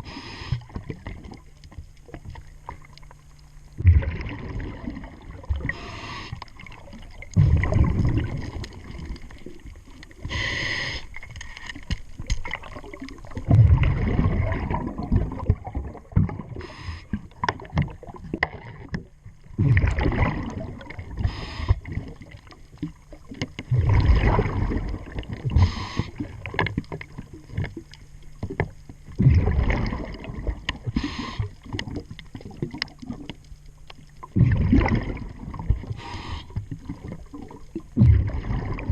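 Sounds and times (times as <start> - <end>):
scuba regulator inhale hiss: 0.0 - 0.7, 5.7 - 6.4, 10.2 - 11.2, 16.6 - 17.2, 21.2 - 21.8, 25.6 - 26.2, 30.9 - 31.6, 35.9 - 36.6
exhaled air bubbling: 0.0 - 38.9.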